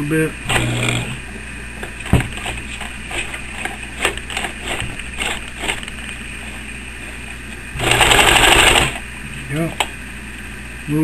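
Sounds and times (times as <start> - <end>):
fast machine stitching: 0.4 - 1.2, 3.1 - 5.9, 7.8 - 9.0
sewing machine hum: 0.4 - 1.3, 2.4 - 7.1, 7.7 - 9.1.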